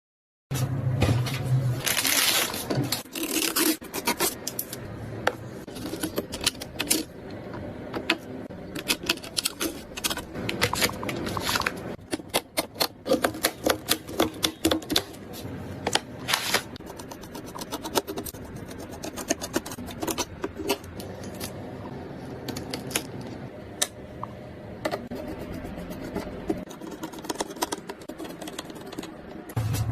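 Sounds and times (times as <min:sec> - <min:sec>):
computer hardware clicking and scraping: 0:02.8 - 0:21.6, 0:24.8 - 0:29.6.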